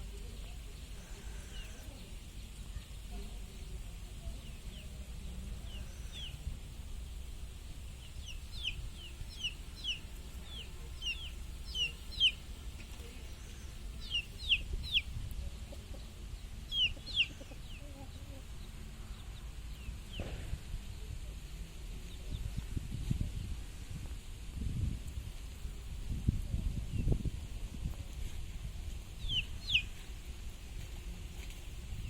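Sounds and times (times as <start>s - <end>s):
chickens cheeping: 7.8s - 12.6s, 13.2s - 19.4s, 29.2s - 30.1s.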